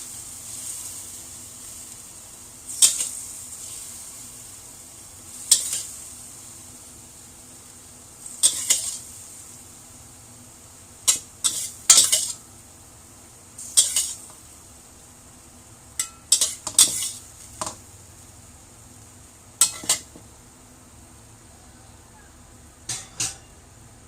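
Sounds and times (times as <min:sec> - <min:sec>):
faint steady hiss: 0:00.0 - 0:24.0
metal utensil scraping cookware: 0:08.4 - 0:09.0, 0:11.1 - 0:12.4, 0:13.7 - 0:14.2, 0:16.0 - 0:17.2, 0:19.6 - 0:20.2, 0:22.9 - 0:23.6.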